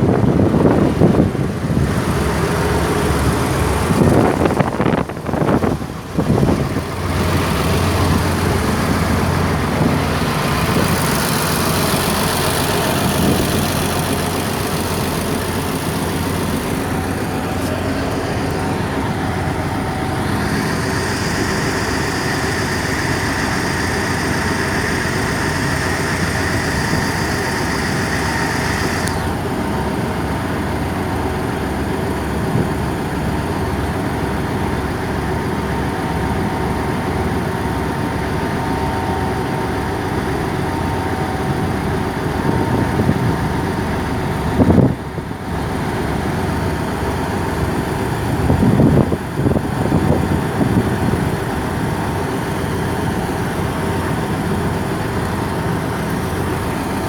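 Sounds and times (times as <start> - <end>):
diesel engine throbbing: 0.0 - 57.0
high whine: 0.1 - 29.9.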